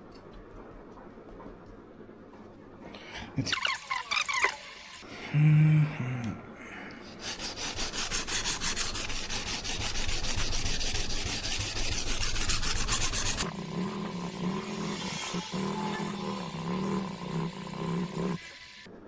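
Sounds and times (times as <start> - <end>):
knife scraping on whetstone: 7.2 - 18.3.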